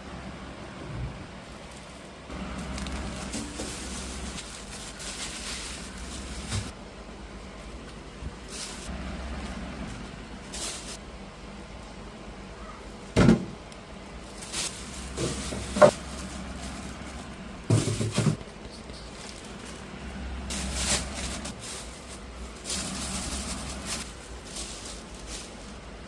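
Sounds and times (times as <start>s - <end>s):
rustling: 1.5s - 6.8s, 7.6s - 11.0s, 14.2s - 26.0s
groceries knocking and thumping: 2.3s - 6.8s, 13.1s - 26.0s.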